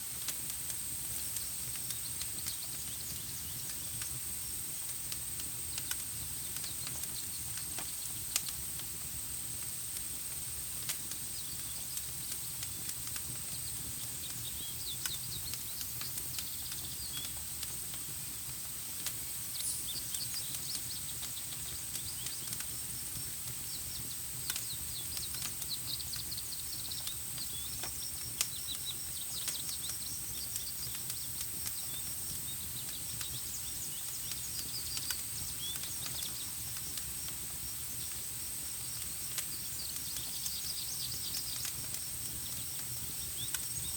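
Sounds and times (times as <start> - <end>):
campfire crackling and popping: 0.0 - 43.9
birds chirping: 19.5 - 37.0.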